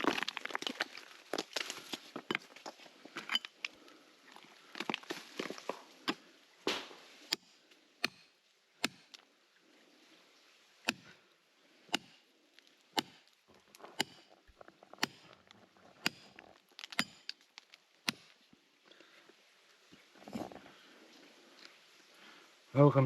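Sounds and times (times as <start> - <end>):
rock breaking apart: 0.0 - 2.5, 12.0 - 18.4
hand tool striking rock: 6.1 - 9.2, 10.9 - 11.1, 11.9 - 12.2, 13.0 - 14.4, 15.0 - 15.4, 16.0 - 18.4.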